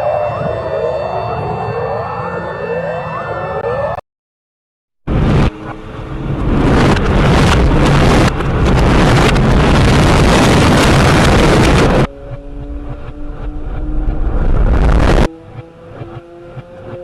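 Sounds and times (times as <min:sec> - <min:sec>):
reversed alarm harsh noise: 0:00.0 - 0:04.0
steady low tones: 0:05.1 - 0:15.3.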